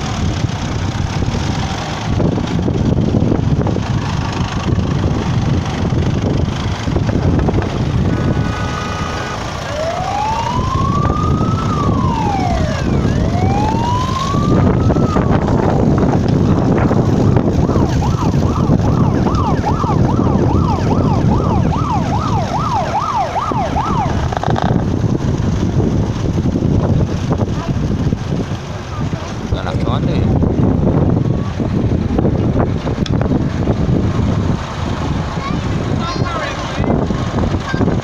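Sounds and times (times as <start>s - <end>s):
emergency vehicle siren: 0.0s - 25.0s
wind rumble on microphone: 0.0s - 38.0s.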